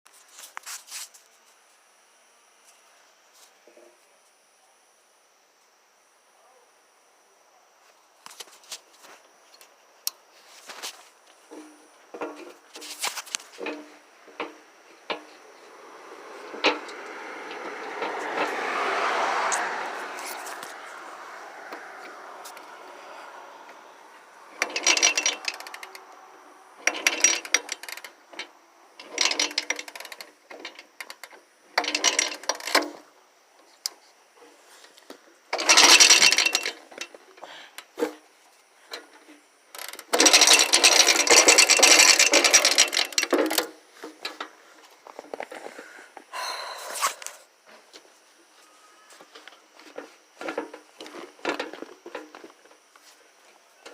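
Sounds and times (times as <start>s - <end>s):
motorcycle kick start clattering: 24.6s - 26.0s, 26.8s - 33.1s, 35.6s - 37.2s, 39.7s - 44.5s.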